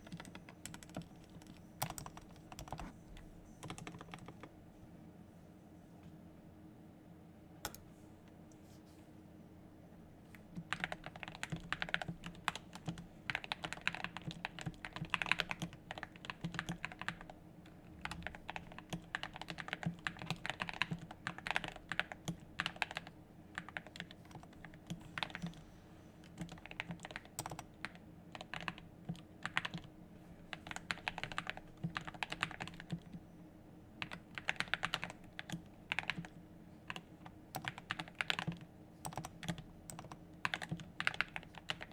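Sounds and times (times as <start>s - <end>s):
mechanical keyboard typing: 0.0s - 2.9s, 3.6s - 4.5s, 10.6s - 17.4s, 18.0s - 25.6s, 26.2s - 29.9s, 30.5s - 33.2s, 34.0s - 41.9s.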